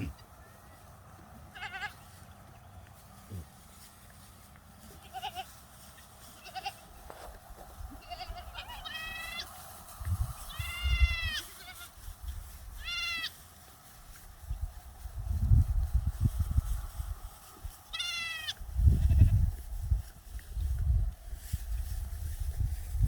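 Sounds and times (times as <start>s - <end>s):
goats bleating: 1.5s - 2.0s, 4.8s - 5.6s, 6.3s - 6.9s, 7.9s - 9.5s, 10.5s - 12.0s, 12.8s - 13.4s, 17.9s - 19.3s.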